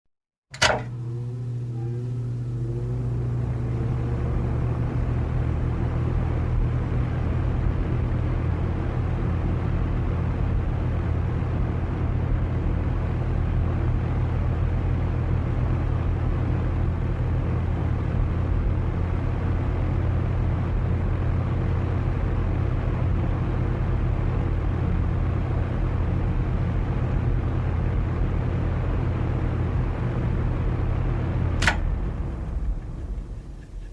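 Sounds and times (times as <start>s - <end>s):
fan switch click: 0.5s - 1.0s, 31.6s - 32.0s
electric fan humming: 0.6s - 33.9s.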